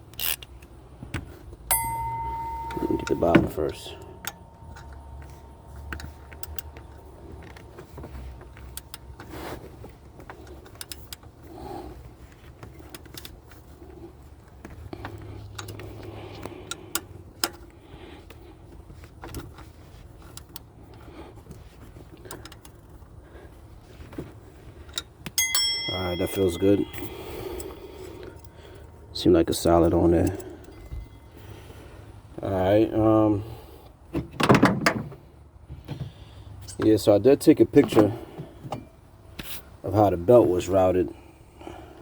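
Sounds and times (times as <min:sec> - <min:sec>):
wrench and socket clicking: 0:00.1 - 0:00.7.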